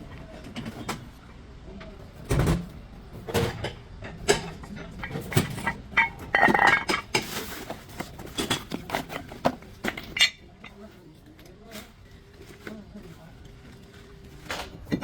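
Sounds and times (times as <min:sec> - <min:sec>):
metal tools clinking and knocking: 0:04.1 - 0:11.0
metal parts clattering: 0:05.0 - 0:10.8.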